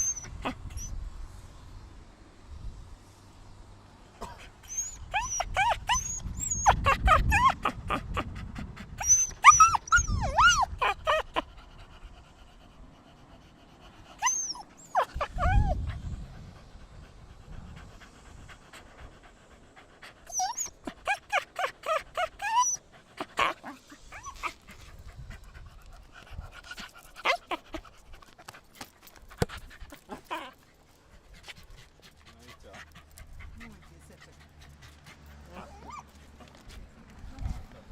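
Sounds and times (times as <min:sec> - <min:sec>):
dog whining and yipping: 0:00.0 - 0:00.9, 0:04.7 - 0:08.3, 0:09.0 - 0:11.4, 0:14.2 - 0:16.0, 0:20.3 - 0:24.7, 0:27.2 - 0:27.7, 0:35.5 - 0:36.1.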